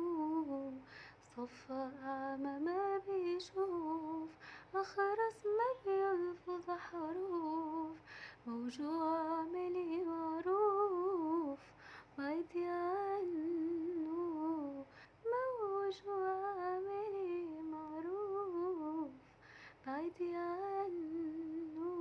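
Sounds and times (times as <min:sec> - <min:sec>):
woman humming a melody: 0:00.0 - 0:00.8.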